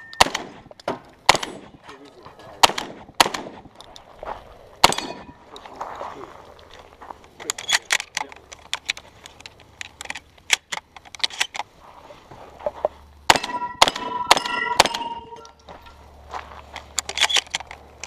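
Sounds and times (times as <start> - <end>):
steel targets ringing: 0.0 - 0.3, 13.3 - 16.0
shotgun shots: 0.0 - 1.8, 2.6 - 3.7, 4.8 - 5.3, 13.3 - 15.4.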